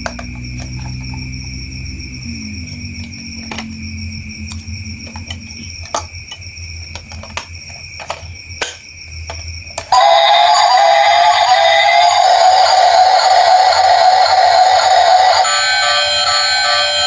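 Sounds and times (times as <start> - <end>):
steady high tone: 9.9 - 17.0.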